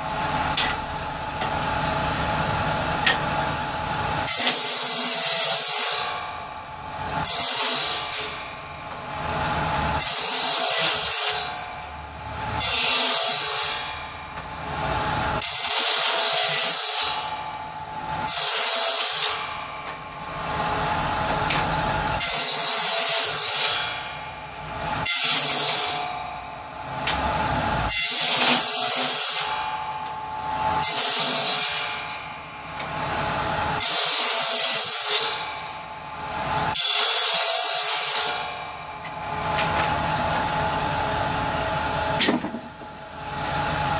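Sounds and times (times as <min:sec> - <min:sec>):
saw rasping through wood: 0:00.0 - 0:06.2, 0:07.0 - 0:08.4, 0:09.0 - 0:11.6, 0:12.3 - 0:13.9, 0:14.6 - 0:23.9, 0:24.9 - 0:26.2, 0:26.9 - 0:35.5, 0:36.2 - 0:38.5
power saw running: 0:06.8 - 0:43.9.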